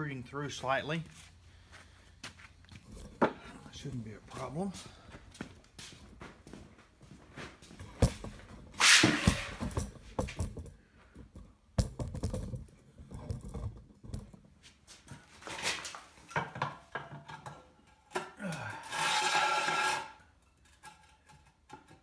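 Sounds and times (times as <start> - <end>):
loud scraping rush: 8.8 - 9.8.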